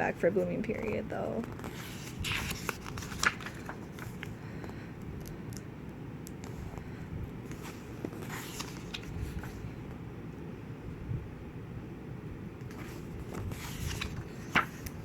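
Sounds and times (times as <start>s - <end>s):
low background hum: 0.0s - 15.0s
pages rustling and clicking: 1.4s - 4.4s, 7.4s - 9.7s, 12.6s - 15.0s.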